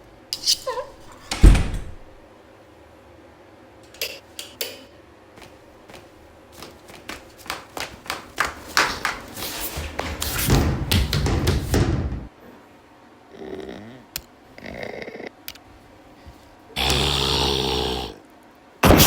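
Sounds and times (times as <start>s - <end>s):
knocks and thuds: 7.8s - 12.3s.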